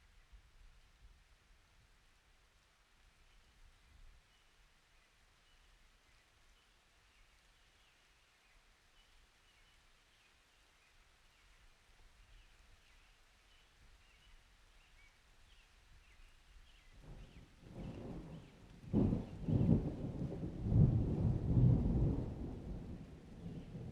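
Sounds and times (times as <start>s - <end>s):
roll of thunder: 17.0s - 23.9s.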